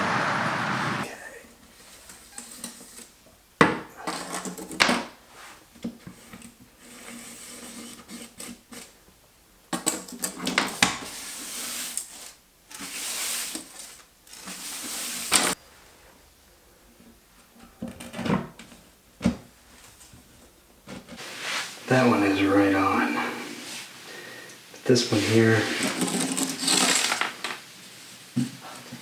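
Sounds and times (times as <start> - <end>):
tile scraping: 6.1 - 9.0, 9.8 - 15.6, 25.1 - 27.6
tiles clinking and knocking: 25.6 - 27.6.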